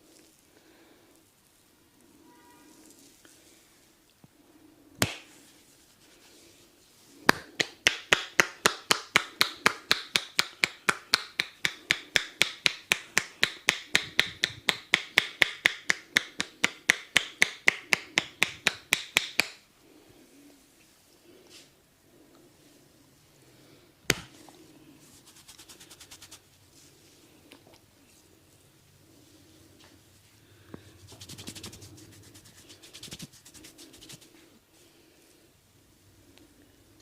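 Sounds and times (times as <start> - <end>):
sharp clicks of hands on head: 5.0 - 5.3, 7.3 - 19.6, 24.1 - 24.3.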